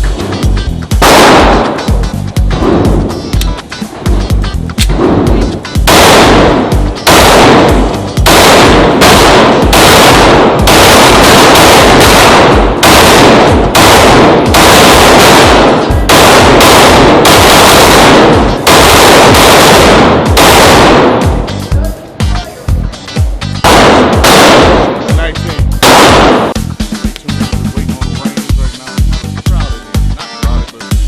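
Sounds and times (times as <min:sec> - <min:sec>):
pistol shots: 0:00.0 - 0:03.3, 0:04.8 - 0:21.6, 0:23.6 - 0:26.6.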